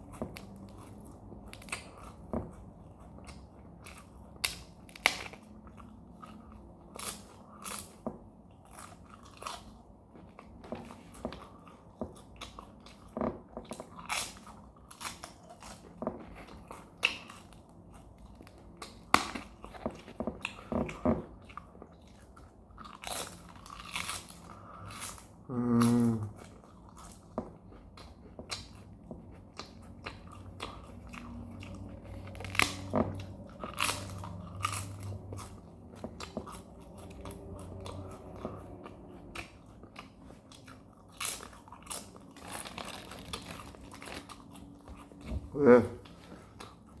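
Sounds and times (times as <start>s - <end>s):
crunchy chewing: 0.0s - 47.0s.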